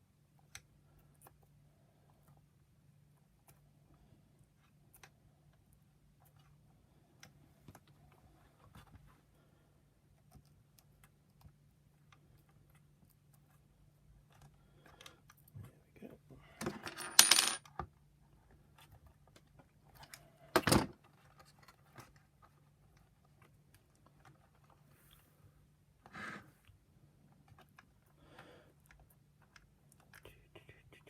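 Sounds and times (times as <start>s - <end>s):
small object clattering on hard surface: 16.6s - 17.7s.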